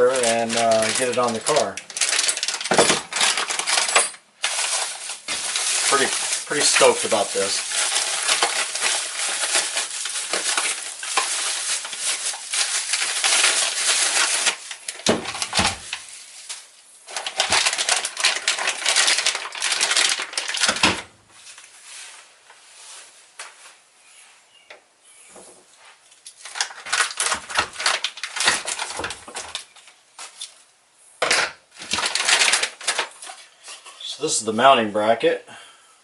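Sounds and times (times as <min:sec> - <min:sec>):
packaging crinkling and rustling: 0:00.0 - 0:22.3, 0:26.1 - 0:30.6, 0:31.2 - 0:34.2.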